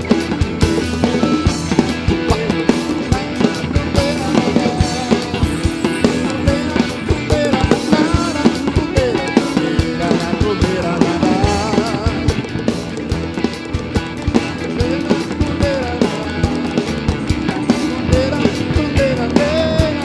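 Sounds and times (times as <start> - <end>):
band playing rock music: 0.0 - 20.0
wavering lead line: 0.6 - 19.9.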